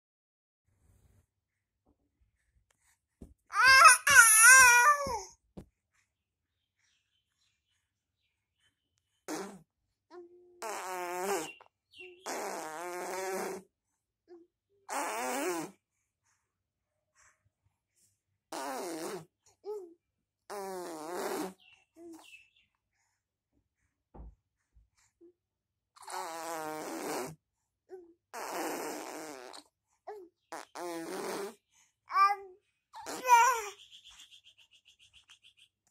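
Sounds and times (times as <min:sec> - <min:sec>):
baby squealing: 0:03.5 - 0:05.3, 0:33.0 - 0:33.8
baby blowing raspberries: 0:03.6 - 0:05.2, 0:09.3 - 0:09.6, 0:10.6 - 0:11.6, 0:12.2 - 0:13.6, 0:14.9 - 0:15.8, 0:18.5 - 0:19.3, 0:20.5 - 0:21.6, 0:26.0 - 0:27.4, 0:28.3 - 0:29.7, 0:30.5 - 0:31.6, 0:33.0 - 0:33.8.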